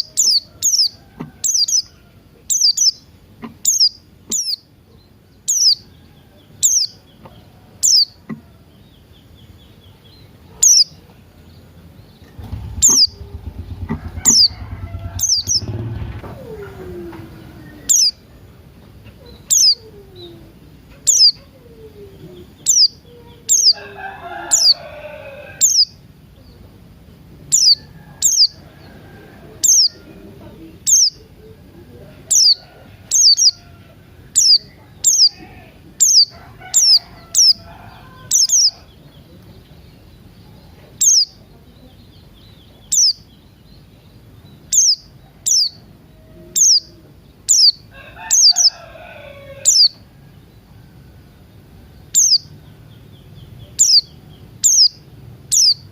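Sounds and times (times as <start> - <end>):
other bird calls: 0.0 - 4.7, 10.6 - 11.0, 12.2 - 26.1, 27.5 - 39.1, 40.7 - 41.4, 42.2 - 43.3, 44.6 - 50.1, 52.1 - 52.6, 53.3 - 55.9
bird chirping: 0.0 - 18.4, 19.0 - 26.8, 27.4 - 28.9, 29.6 - 30.0, 30.6 - 31.6, 32.3 - 50.6, 51.6 - 55.9.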